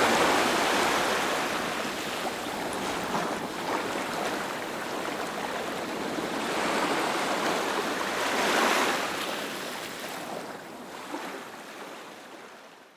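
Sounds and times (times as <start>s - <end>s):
ocean wave breaking: 0.0s - 9.5s.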